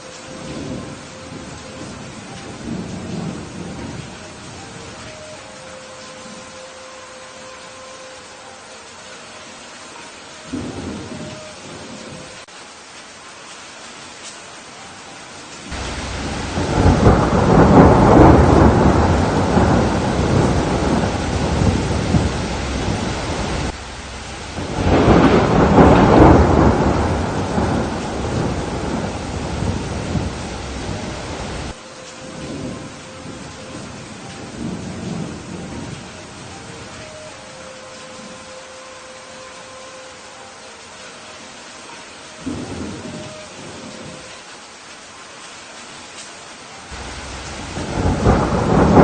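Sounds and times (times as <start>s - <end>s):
steady rain: 0.0s - 49.0s
rolling thunder: 15.7s - 36.8s, 42.5s - 44.2s, 46.9s - 49.0s.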